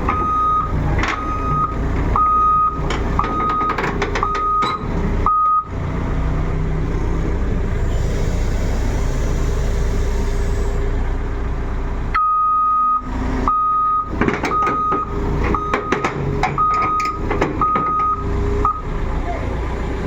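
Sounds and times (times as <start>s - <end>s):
heavy diesel engine running: 0.0s - 20.0s
reversing alarm beeping: 0.1s - 5.7s, 12.2s - 18.9s.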